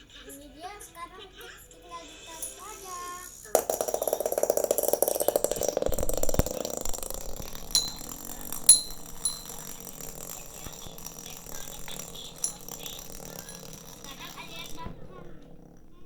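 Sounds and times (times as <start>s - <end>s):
spinning top rattling whir: 2.3s - 16.0s
sharp clinks: 3.6s - 16.0s.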